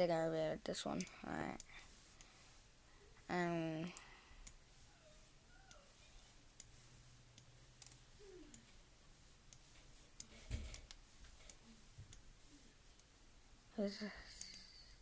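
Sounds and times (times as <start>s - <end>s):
computer mouse clicking: 7.4s - 8.7s, 9.5s - 12.3s, 14.4s - 15.0s.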